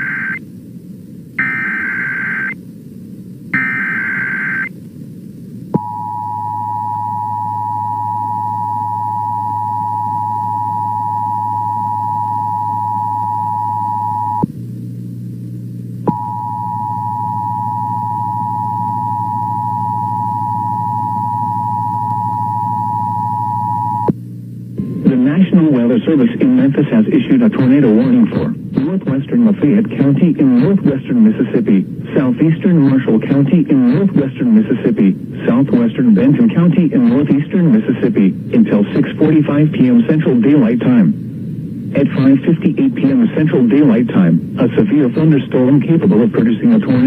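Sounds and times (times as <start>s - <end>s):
low steady hum: 0.0s - 47.0s
high screeching data bursts: 1.4s - 2.6s, 3.6s - 4.7s
two-tone attention signal: 1.4s - 2.6s, 3.6s - 4.7s, 5.8s - 14.4s, 16.1s - 24.1s.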